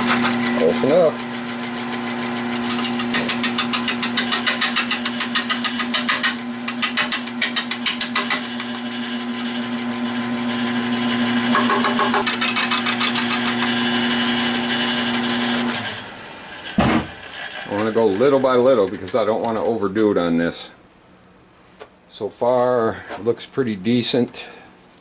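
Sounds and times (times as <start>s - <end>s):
wood lathe humming: 0.0s - 19.7s.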